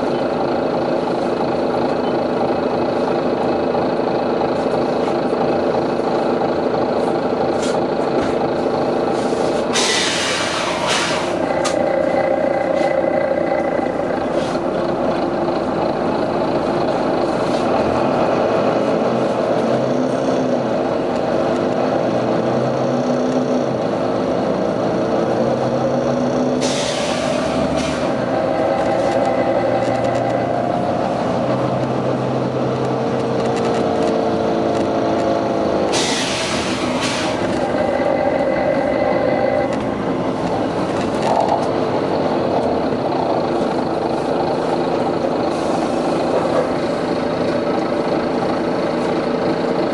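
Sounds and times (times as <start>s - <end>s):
bus engine running: 0.0s - 49.9s
air hiss bursts: 9.8s - 11.3s, 35.9s - 37.4s.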